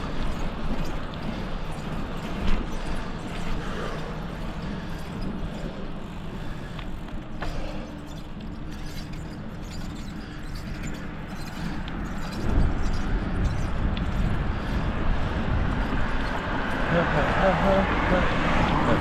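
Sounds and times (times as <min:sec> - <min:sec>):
bicycle rolling: 0:00.0 - 0:19.0
faint bike clicks: 0:00.0 - 0:19.0
wind noise on microphone: 0:09.0 - 0:19.0.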